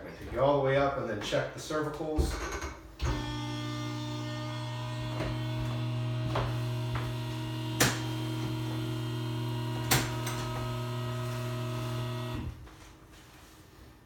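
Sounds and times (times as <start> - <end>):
electric lift motor humming: 3.0 - 12.6.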